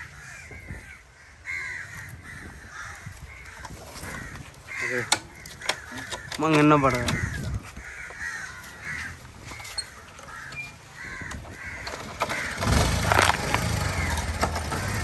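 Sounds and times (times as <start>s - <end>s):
crows cawing: 0.0s - 14.3s
low steady engine: 10.3s - 15.0s.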